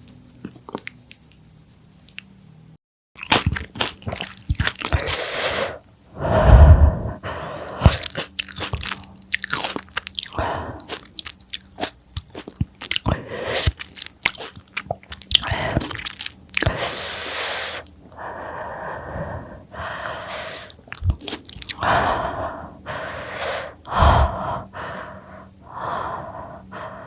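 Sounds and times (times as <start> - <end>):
crunchy chewing: 0.0 - 1.2, 3.2 - 5.8, 7.5 - 18.0, 20.0 - 22.1.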